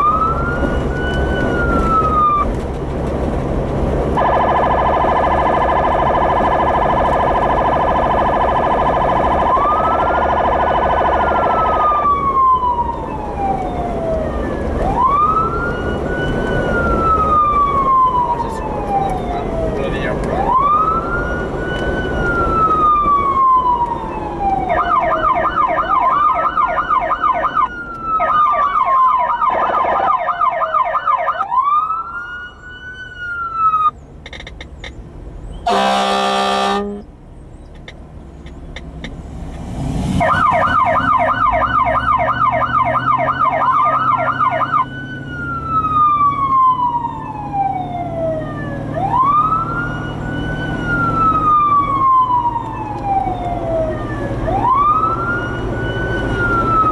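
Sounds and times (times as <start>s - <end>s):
police siren wail and yelp: 0.0s - 3.4s, 4.0s - 34.0s, 35.7s - 37.0s, 40.0s - 56.9s
vehicle engine rumble: 0.0s - 56.9s
vehicle horn blast: 35.6s - 37.1s.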